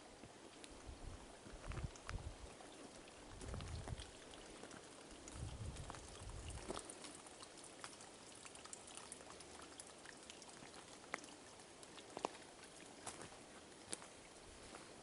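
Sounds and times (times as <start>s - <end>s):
footsteps on a trail: 1.4s - 2.3s, 3.3s - 7.2s, 12.1s - 15.0s
crackles underfoot: 3.4s - 7.2s, 11.9s - 15.0s.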